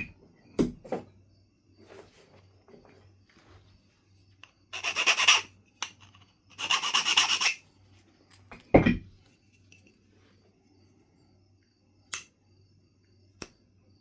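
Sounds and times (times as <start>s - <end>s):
stone rasping on flint: 4.8s - 7.6s.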